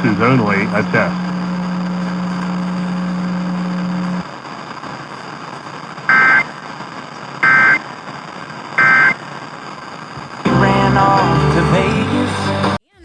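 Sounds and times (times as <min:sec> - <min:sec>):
steady low hum: 0:00.0 - 0:11.1
radio hiss: 0:00.0 - 0:12.8
shrill digital data bursts: 0:06.1 - 0:06.5, 0:07.4 - 0:07.8, 0:08.8 - 0:09.2.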